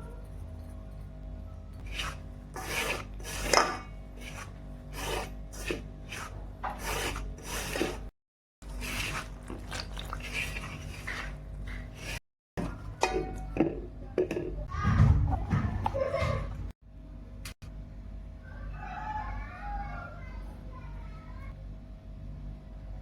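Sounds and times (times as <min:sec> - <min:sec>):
rough scraping strokes: 0:01.8 - 0:12.2.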